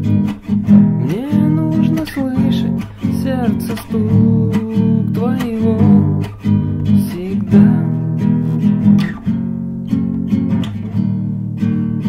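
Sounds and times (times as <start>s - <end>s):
acoustic guitar strumming: 0.0s - 12.0s
man singing: 1.0s - 8.3s.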